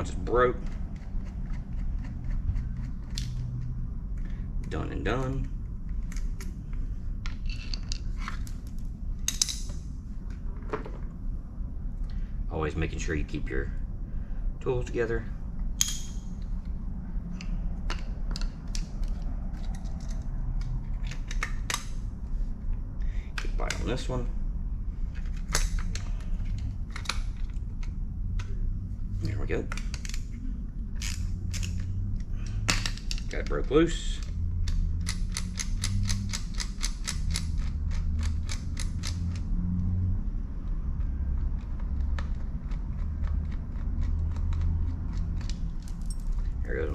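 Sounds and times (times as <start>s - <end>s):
steady low hum: 0.0s - 46.9s
steady low rumble: 0.0s - 46.9s
hand tools clicking on metal: 32.4s - 39.4s.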